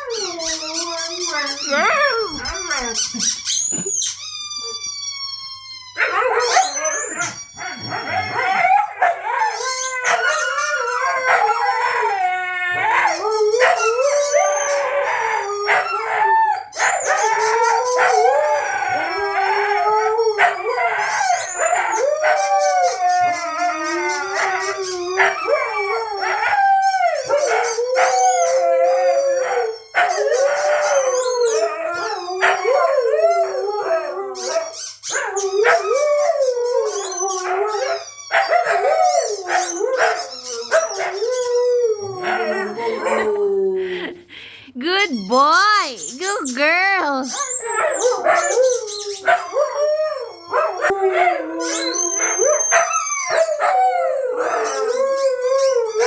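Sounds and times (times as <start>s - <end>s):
dogs howling: 0.0s - 3.8s, 5.9s - 44.0s, 47.3s - 56.0s
squeaky toy squeaking: 0.0s - 8.0s, 37.8s - 38.8s.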